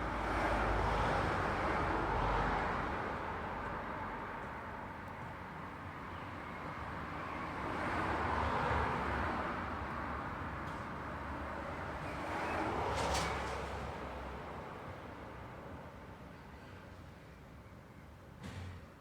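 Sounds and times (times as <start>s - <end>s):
road traffic: 0.0s - 18.7s.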